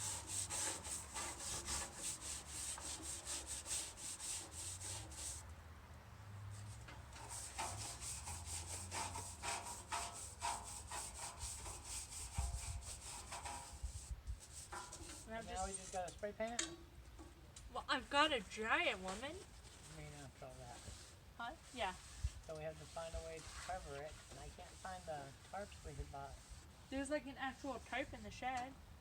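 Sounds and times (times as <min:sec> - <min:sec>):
sanding by hand strokes: 0:00.0 - 0:05.4, 0:06.6 - 0:16.0, 0:19.6 - 0:27.0.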